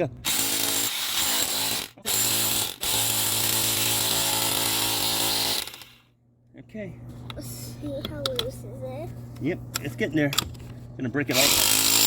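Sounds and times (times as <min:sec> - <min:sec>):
hammer drill chiselling concrete: 0:00.3 - 0:06.0, 0:11.3 - 0:12.0.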